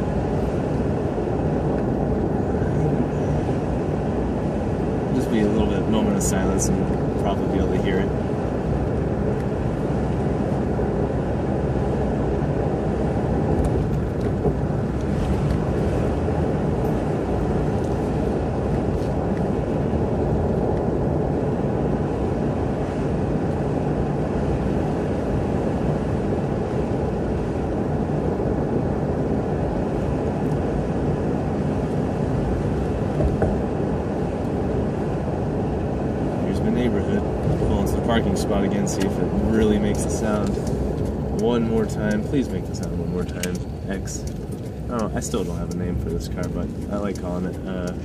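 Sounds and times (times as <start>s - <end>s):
car engine and road noise: 0.0s - 48.0s.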